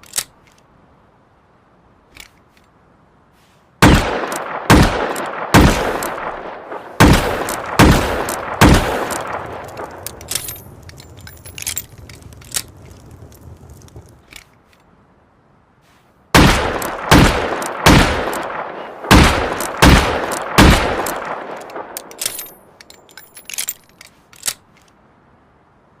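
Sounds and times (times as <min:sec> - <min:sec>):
faint metallic clicks: 0:02.1 - 0:02.8, 0:07.4 - 0:14.9, 0:19.5 - 0:25.0.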